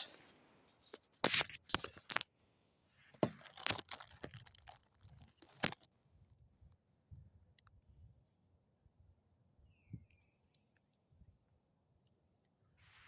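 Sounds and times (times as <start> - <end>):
rustling: 0.0 - 2.2, 3.2 - 5.9.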